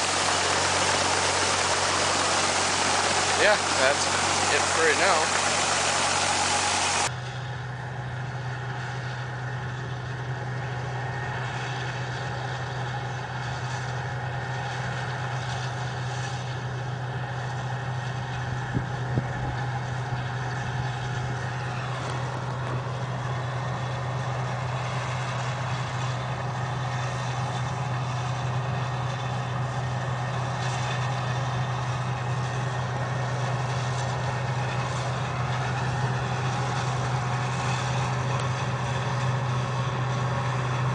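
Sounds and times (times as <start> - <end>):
falling whine: 0.0 - 7.4
vehicle engine humming: 0.0 - 40.9.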